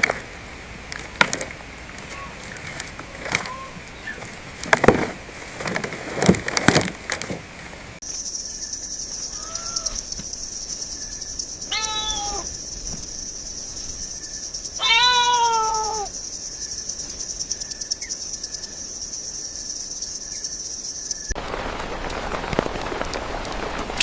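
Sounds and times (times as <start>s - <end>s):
cat meowing: 9.4s - 10.0s, 11.7s - 12.5s, 14.8s - 16.1s.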